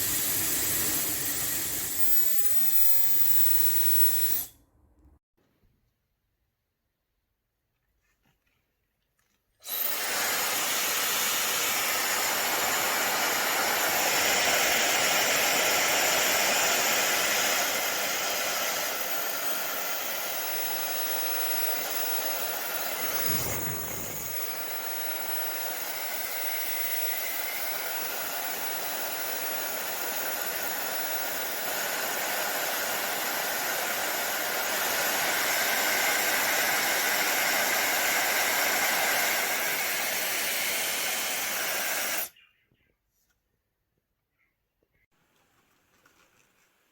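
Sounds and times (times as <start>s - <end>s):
hair dryer blowing air: 0.0s - 2.8s, 9.6s - 42.3s.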